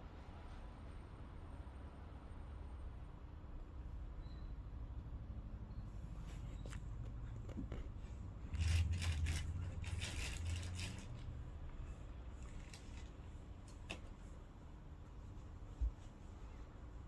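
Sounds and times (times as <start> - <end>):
crackling scraping plastic clicks: 6.7 - 11.4.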